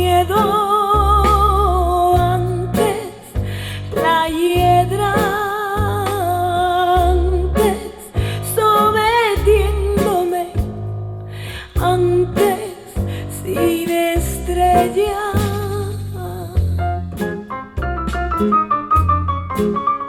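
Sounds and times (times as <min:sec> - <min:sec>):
deep sustained bass notes: 0:00.0 - 0:02.8, 0:14.2 - 0:17.2.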